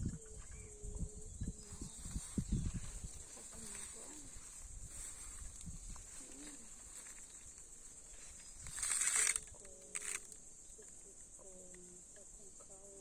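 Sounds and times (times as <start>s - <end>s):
high-pitched insect buzz: 0.0s - 13.0s
loud rustling: 2.2s - 10.4s.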